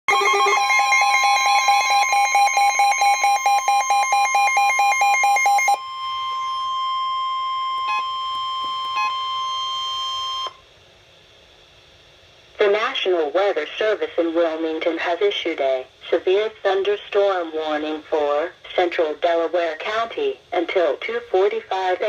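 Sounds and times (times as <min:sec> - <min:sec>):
rapid alarm beeping: 0:00.1 - 0:10.6
steady warning alarm tone: 0:00.1 - 0:10.6.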